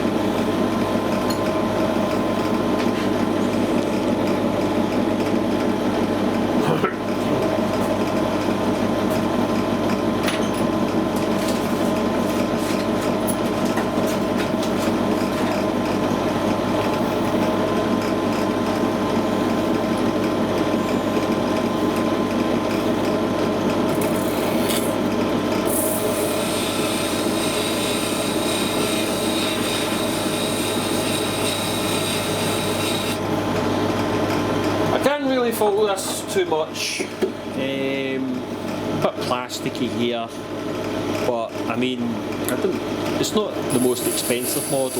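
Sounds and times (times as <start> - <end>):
bench drill motor hum: 23.1 - 33.5, 43.7 - 44.9.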